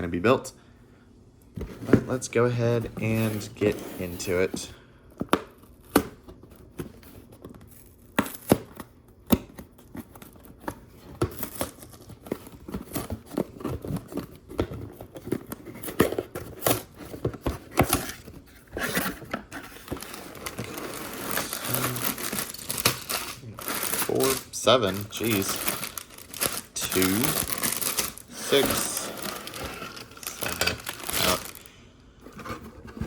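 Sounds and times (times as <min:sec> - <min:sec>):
cardboard box tearing open: 0:15.0 - 0:31.7
plastic bags crinkling: 0:19.8 - 0:31.7.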